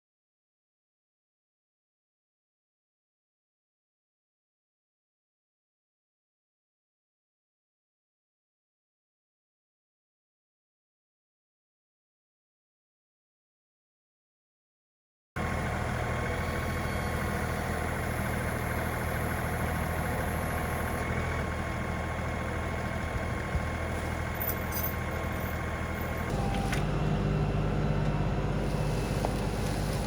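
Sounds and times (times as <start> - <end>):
tractor engine running: 15.4 - 30.0.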